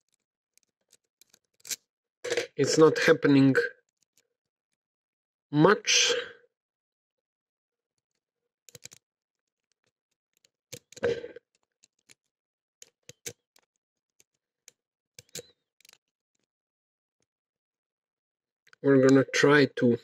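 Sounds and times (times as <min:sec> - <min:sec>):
lock-picking tools clicking in padlock: 0:00.0 - 0:01.9, 0:08.0 - 0:16.5.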